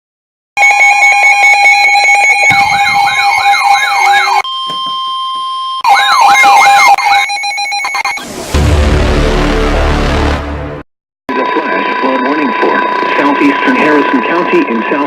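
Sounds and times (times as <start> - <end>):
pulsing electronic alarm tones: 0.6 - 8.4
siren yelp: 0.6 - 8.4
steady electronic tone: 2.4 - 4.4.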